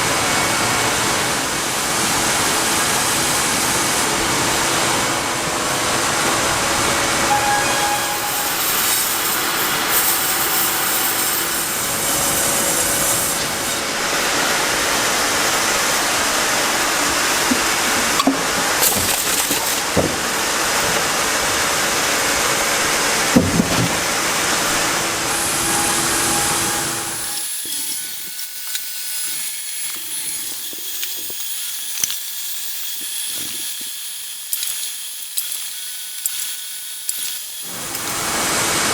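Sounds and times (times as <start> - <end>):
woodworking machine running on wood: 36.6 - 38.9.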